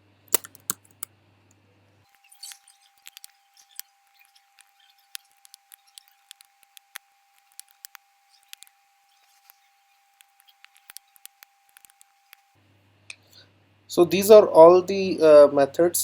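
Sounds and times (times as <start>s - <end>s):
keyboard keystrokes: 0.3s - 1.1s.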